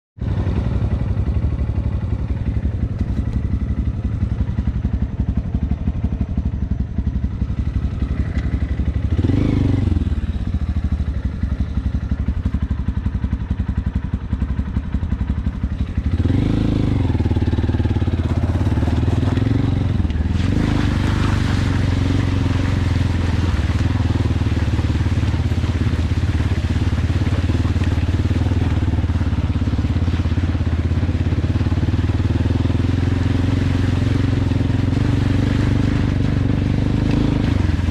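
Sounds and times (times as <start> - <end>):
motorcycle engine revving: 0.2 - 37.9.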